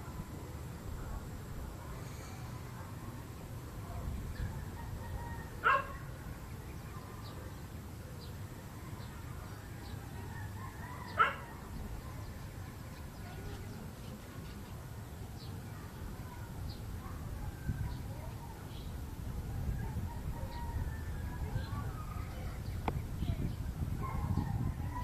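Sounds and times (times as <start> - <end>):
dog barking: 5.6 - 6.0, 11.2 - 11.5, 24.0 - 25.0.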